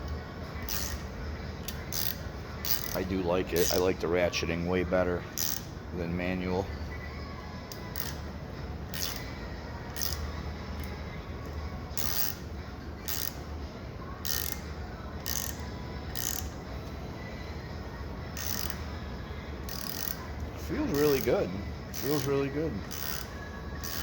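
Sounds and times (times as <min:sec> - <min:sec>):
ratcheting tap wrench clicking: 0:00.6 - 0:03.0, 0:03.6 - 0:03.8, 0:05.4 - 0:05.7, 0:07.7 - 0:08.3, 0:08.9 - 0:09.3, 0:09.9 - 0:12.4, 0:13.0 - 0:13.4, 0:14.2 - 0:16.6, 0:18.4 - 0:18.9, 0:19.7 - 0:20.3, 0:21.9 - 0:24.0.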